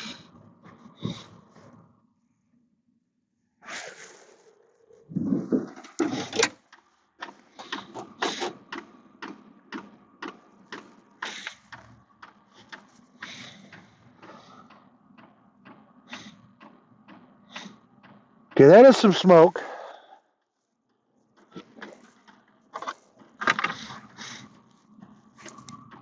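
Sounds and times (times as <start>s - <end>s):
diesel heater humming: 0.0s - 26.0s
fuel pump ticking: 5.8s - 19.5s.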